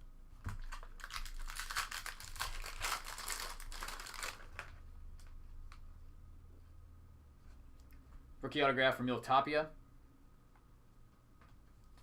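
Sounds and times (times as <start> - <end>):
plastic wrapper crinkling: 0.5 - 5.3.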